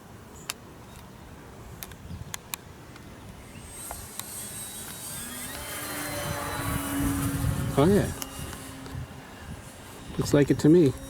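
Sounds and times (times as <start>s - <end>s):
model plane motor whining: 2.9s - 11.0s
wind on microphone: 3.1s - 11.0s.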